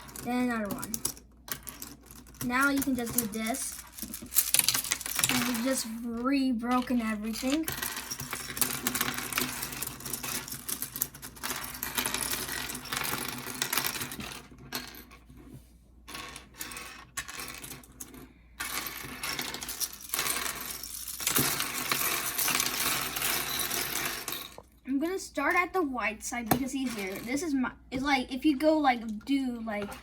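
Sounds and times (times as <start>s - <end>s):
plastic pieces clicking and clattering: 0.0s - 5.9s, 6.7s - 14.8s, 16.1s - 24.6s.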